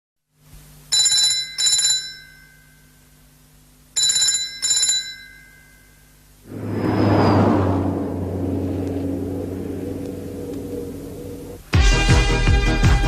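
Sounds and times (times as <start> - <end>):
telephone-style bell ringing: 0.9 - 2.9, 4.0 - 6.1.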